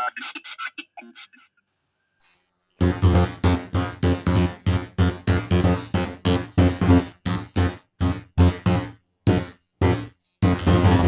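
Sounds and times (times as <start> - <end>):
staccato synthesizer chords: 2.8 - 11.0.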